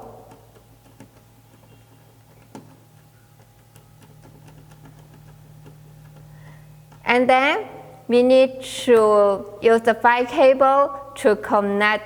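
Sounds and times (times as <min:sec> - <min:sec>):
low steady hum: 0:00.0 - 0:12.0
small clicks and taps of wires: 0:00.3 - 0:02.8.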